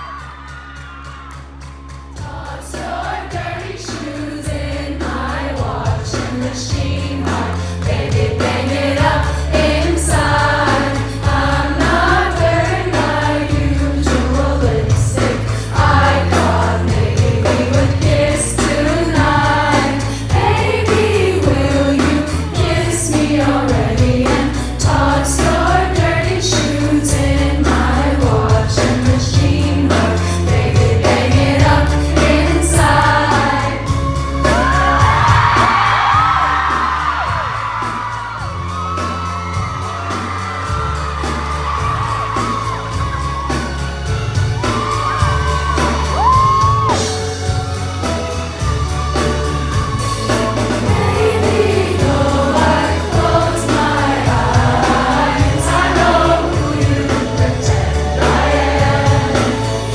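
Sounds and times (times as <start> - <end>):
live pop song through pa: 0.0 - 59.9
woman singing: 3.7 - 33.9.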